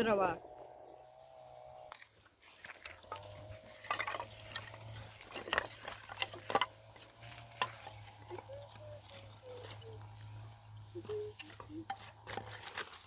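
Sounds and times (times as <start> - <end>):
crackly rustling of twigs: 0.5 - 13.0
sticks clicking and knocking: 2.6 - 9.8.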